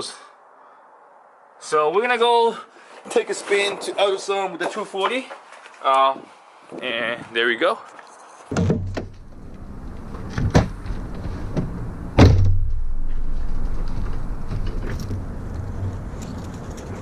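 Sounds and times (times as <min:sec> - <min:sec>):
car engine rumbling: 0:09.1 - 0:17.0
car door slam: 0:11.6 - 0:12.8.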